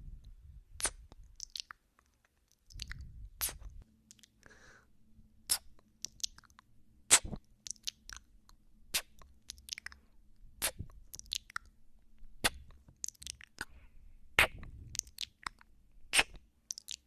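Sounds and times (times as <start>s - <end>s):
wet lip smacks: 0.8s - 1.8s, 2.5s - 4.3s, 5.5s - 8.3s, 10.6s - 11.7s, 12.4s - 13.7s, 14.4s - 17.0s
tongue clicks: 0.8s - 4.4s, 5.5s - 10.0s, 10.6s - 11.7s, 12.4s - 13.7s, 14.4s - 17.0s.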